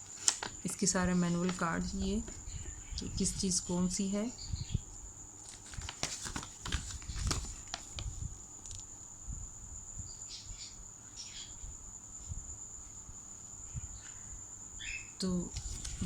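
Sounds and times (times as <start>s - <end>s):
paper rustling: 0.0s - 2.4s, 5.4s - 8.8s, 15.5s - 16.0s.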